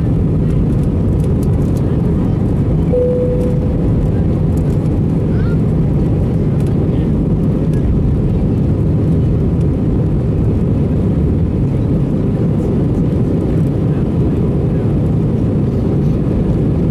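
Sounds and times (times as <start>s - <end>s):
jet engines rumbling: 0.0s - 16.9s
faint steady whine: 2.9s - 4.4s.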